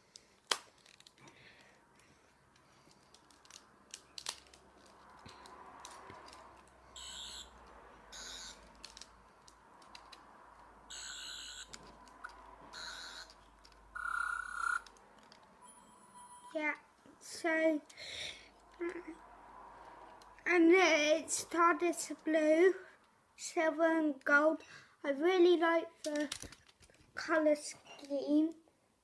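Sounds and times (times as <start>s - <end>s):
toy electronic high-pitched bursts: 7.0s - 8.6s, 10.9s - 11.8s, 12.7s - 13.3s, 14.0s - 14.9s.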